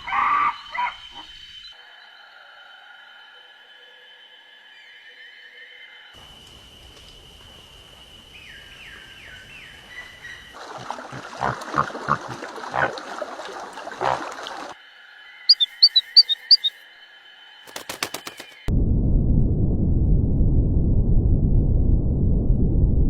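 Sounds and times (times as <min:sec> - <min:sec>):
bird chirping: 0:15.4 - 0:16.8
falling whistles: 0:15.5 - 0:16.8.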